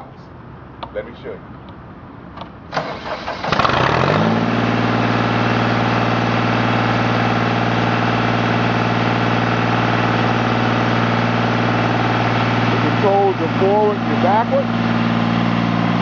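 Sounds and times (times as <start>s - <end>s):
diesel engine starting and idling: 2.7s - 16.0s.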